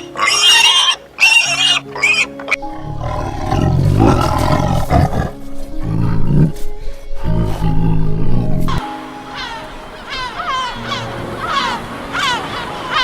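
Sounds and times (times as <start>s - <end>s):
background music: 0.0s - 13.0s
large animal roaring: 2.6s - 6.6s, 7.2s - 8.8s.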